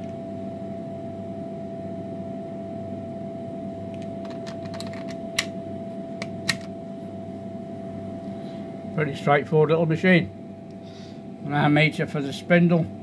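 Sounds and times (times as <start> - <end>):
machine hum with whine: 0.0 - 13.0
control panel keys clicking: 3.9 - 5.5.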